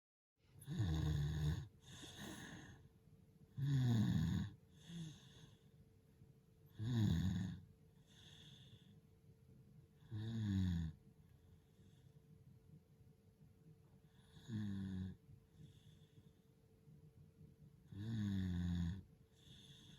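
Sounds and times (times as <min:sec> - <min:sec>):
person snoring lightly: 0:00.6 - 0:02.8, 0:03.6 - 0:05.3, 0:06.8 - 0:07.6, 0:14.3 - 0:15.2
soft breath out: 0:01.8 - 0:02.9, 0:19.3 - 0:19.9.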